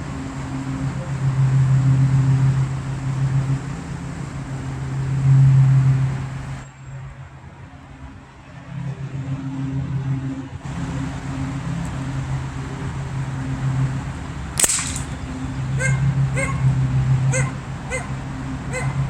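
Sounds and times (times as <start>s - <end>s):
engine humming: 0.0s - 6.6s, 10.6s - 19.0s.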